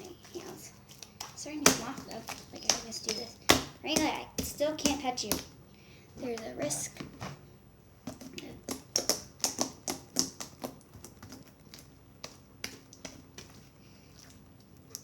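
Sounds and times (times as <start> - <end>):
slime clicking and popping: 8.6 - 13.4.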